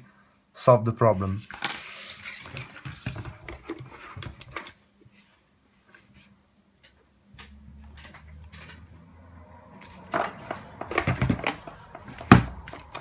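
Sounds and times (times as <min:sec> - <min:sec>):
plastic headset clicks and knocks: 0:09.8 - 0:13.0.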